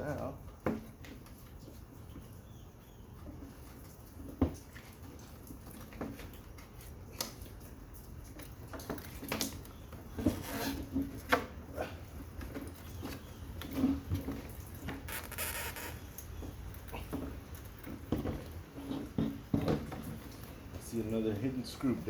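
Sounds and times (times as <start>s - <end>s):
scraping rasp: 10.2s - 11.1s.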